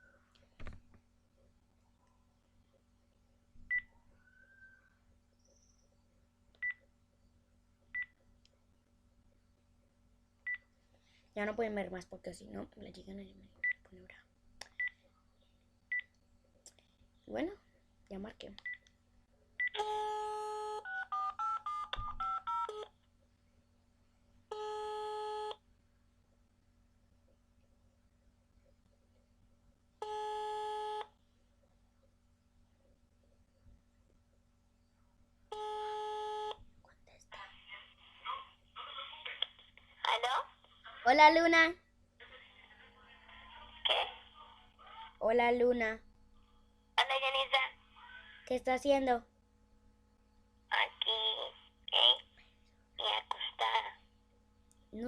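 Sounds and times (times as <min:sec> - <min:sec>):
steady phone tone: 0:19.8 - 0:22.9, 0:24.5 - 0:25.6, 0:30.0 - 0:31.1, 0:35.5 - 0:36.6
telephone keypad beeps: 0:20.8 - 0:22.8.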